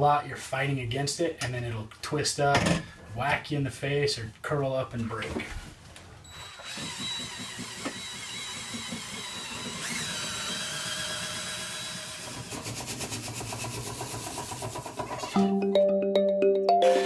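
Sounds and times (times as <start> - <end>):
drill whining: 6.3 - 14.6
music: 15.4 - 17.0.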